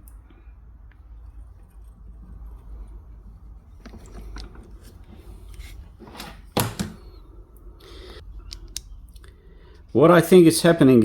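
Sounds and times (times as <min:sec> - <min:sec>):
light clicks of parts handled: 0:08.1 - 0:09.9.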